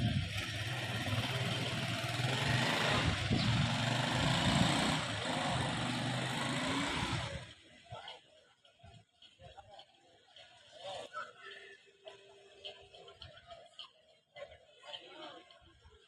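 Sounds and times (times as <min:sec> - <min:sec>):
noisy rattle: 0:00.0 - 0:07.5
engine humming: 0:00.0 - 0:07.6.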